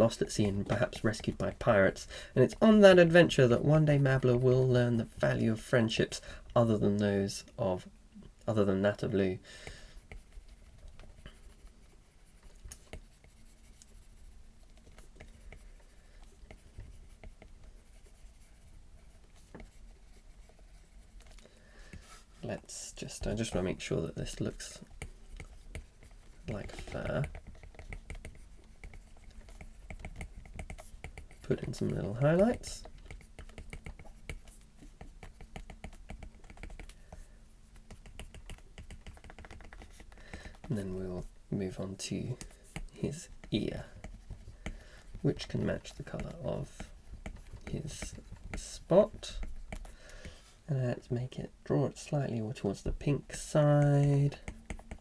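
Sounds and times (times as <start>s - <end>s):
stylus scratching on tablet: 9.9s - 50.5s, 52.7s - 55.0s.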